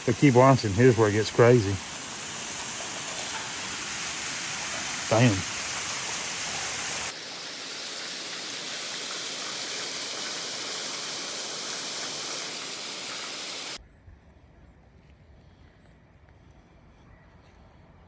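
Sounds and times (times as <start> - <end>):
waterfall rushing: 0.0 - 13.8.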